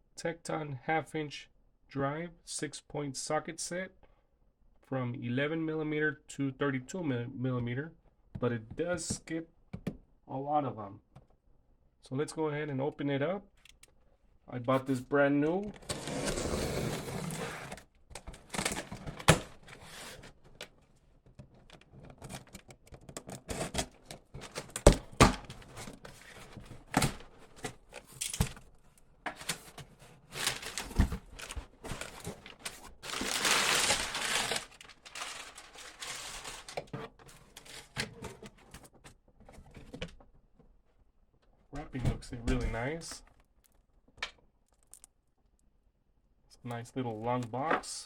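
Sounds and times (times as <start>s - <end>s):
plastic wrapping crinkling: 30.4s - 36.9s.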